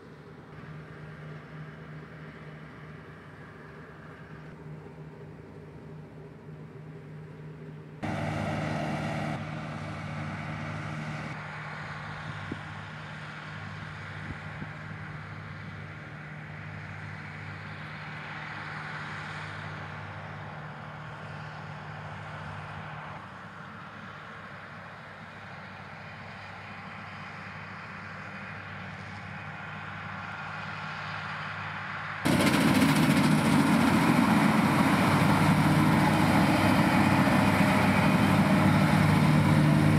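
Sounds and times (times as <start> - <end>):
combine harvester engine hum: 0.0 - 39.9
threshing machinery rushing: 32.3 - 39.9.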